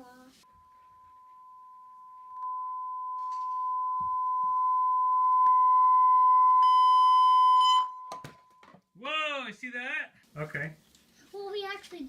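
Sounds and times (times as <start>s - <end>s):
steady pure tone: 0.5s - 8.2s.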